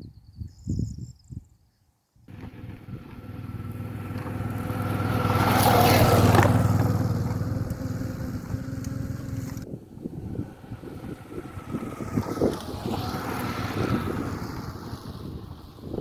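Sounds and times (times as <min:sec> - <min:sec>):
motorcycle engine running: 0:02.3 - 0:15.4.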